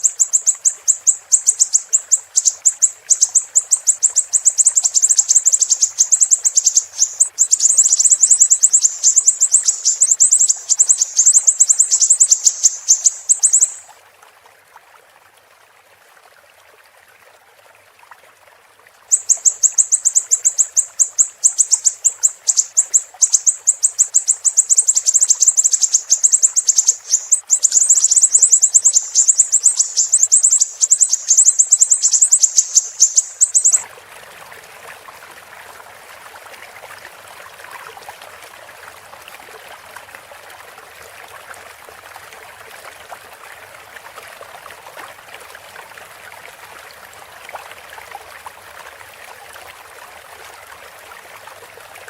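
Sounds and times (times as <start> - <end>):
bird twittering trill: 0.0 - 13.9, 19.1 - 33.8
faint flowing water: 0.0 - 52.0.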